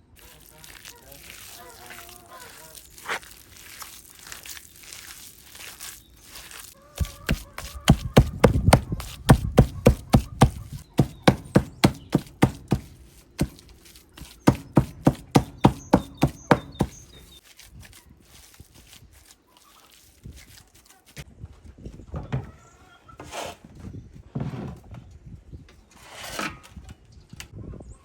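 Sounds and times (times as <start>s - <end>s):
sharp evenly spaced knocks: 7.3s - 13.6s, 14.3s - 17.1s.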